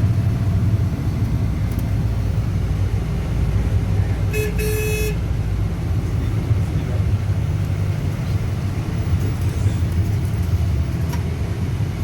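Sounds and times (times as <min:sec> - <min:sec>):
horn tooting: 0:04.3 - 0:05.2.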